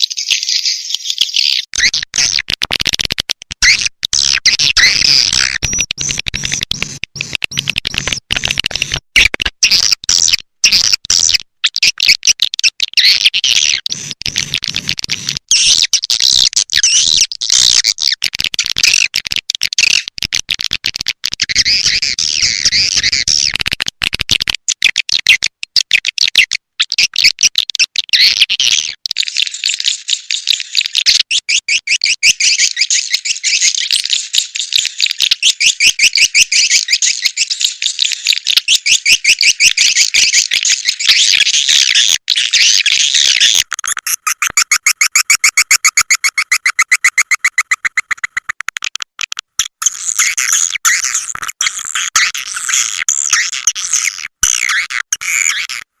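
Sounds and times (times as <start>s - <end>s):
swiftlets twittering: 44.2s - 48.6s.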